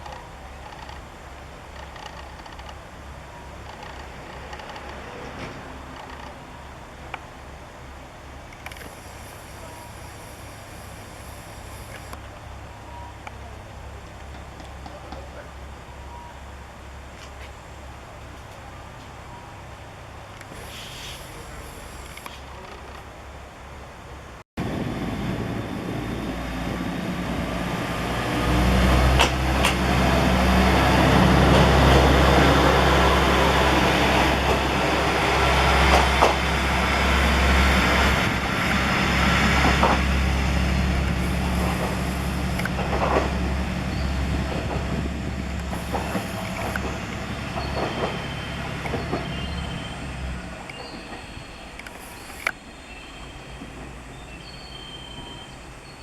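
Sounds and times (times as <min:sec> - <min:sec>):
train rumbling past: 0:00.0 - 0:56.0
sharp clicks: 0:41.3 - 0:43.3.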